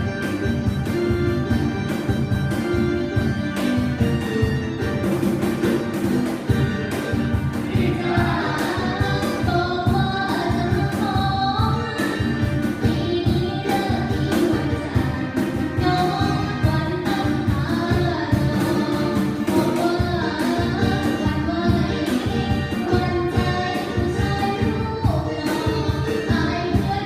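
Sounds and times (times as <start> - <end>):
live band playing: 0.0 - 27.0
person singing: 7.5 - 27.0.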